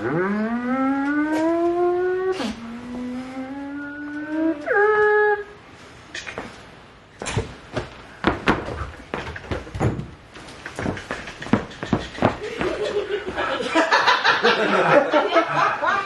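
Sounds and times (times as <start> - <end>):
person imitating a siren: 0.0 - 5.6
sharp knocks and thumps: 7.2 - 13.4.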